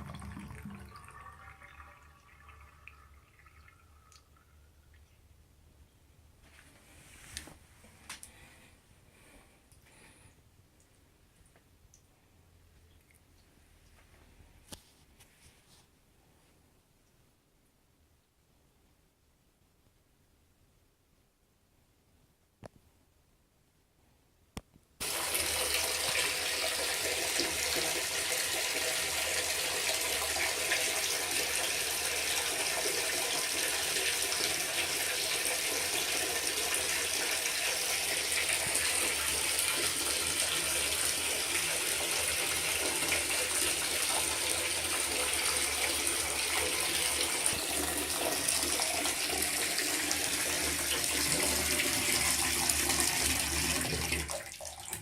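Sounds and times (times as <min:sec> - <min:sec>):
water running from a faucet: 0:25.0 - 0:55.0.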